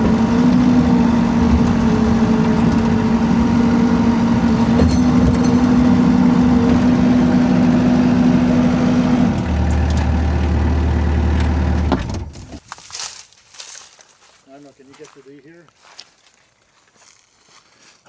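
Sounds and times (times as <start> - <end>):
small diesel engine running: 0.0 - 12.6.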